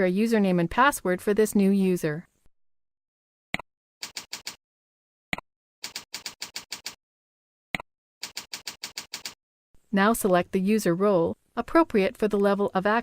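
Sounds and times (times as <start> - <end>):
keyboard typing: 4.0 - 4.6, 5.8 - 7.0, 8.2 - 9.4.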